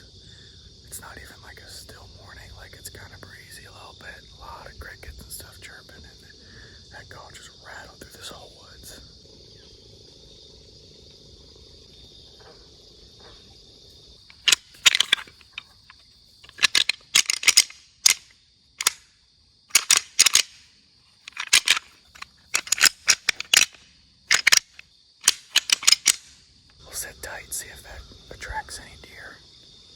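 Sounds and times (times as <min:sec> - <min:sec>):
crickets chirping: 0:00.0 - 0:29.9
rattle bag clacking: 0:14.3 - 0:19.0, 0:19.7 - 0:26.4.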